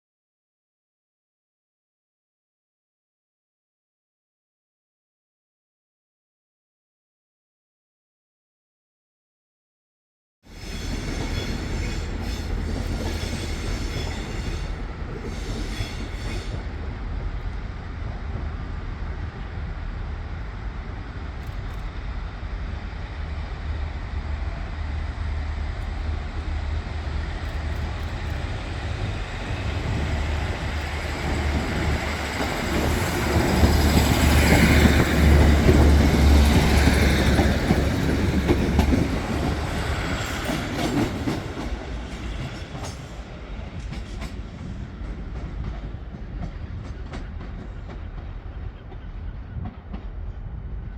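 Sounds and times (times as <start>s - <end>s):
train rumbling: 10.5s - 50.9s.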